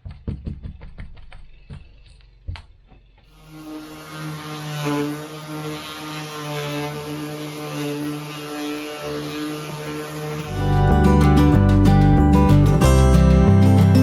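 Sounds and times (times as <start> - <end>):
engine-like drone: 3.3 - 14.0.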